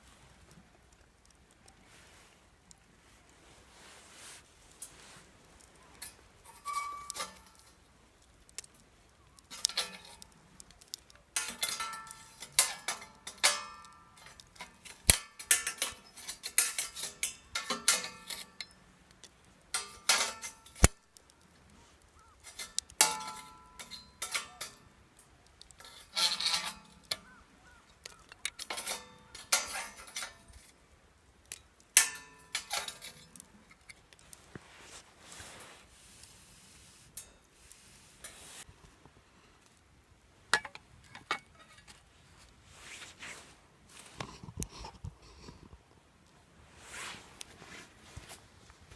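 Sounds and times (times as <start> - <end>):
metal parts clinking together: 9.4 - 10.3, 10.9 - 18.8, 19.8 - 21.0, 22.4 - 24.8, 25.7 - 30.7, 32.0 - 34.0.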